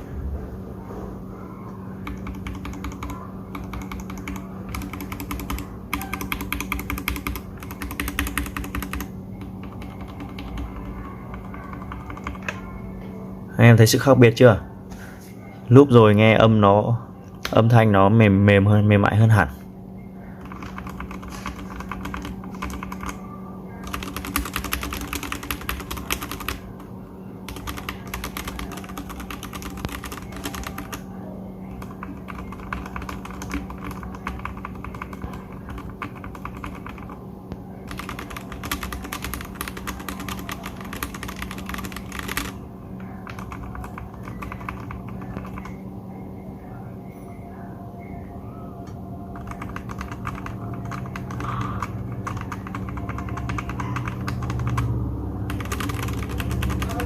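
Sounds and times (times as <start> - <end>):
mechanical keyboard typing: 2.0 - 12.7, 20.4 - 23.2, 23.8 - 26.9, 27.5 - 37.2, 37.8 - 45.8, 49.3 - 57.0.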